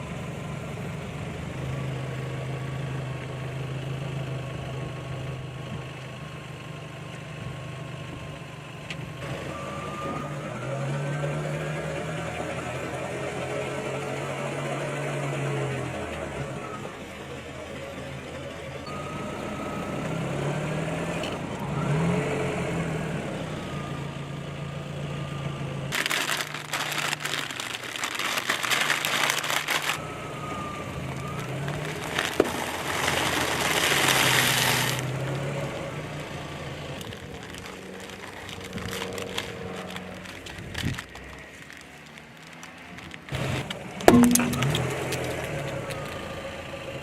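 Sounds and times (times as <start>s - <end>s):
car engine running: 24.7s - 47.0s
tyre crunching objects: 25.9s - 30.0s, 31.0s - 46.2s.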